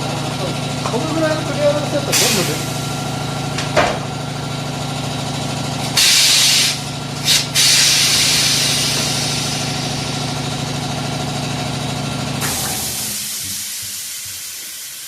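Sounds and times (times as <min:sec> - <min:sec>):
steady machine hum: 0:00.0 - 0:15.0
compressed air hissing: 0:02.1 - 0:02.9, 0:05.8 - 0:10.3, 0:12.4 - 0:15.0.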